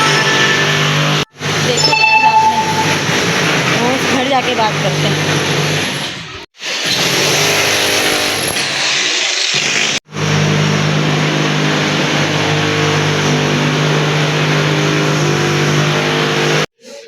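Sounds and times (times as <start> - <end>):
electric drill grinding into concrete: 6.6 - 10.0.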